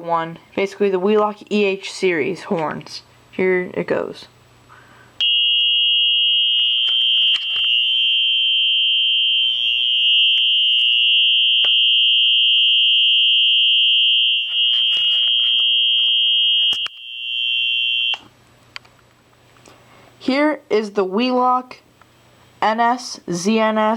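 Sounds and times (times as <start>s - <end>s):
high-pitched electronic alarm tone: 5.2s - 18.2s.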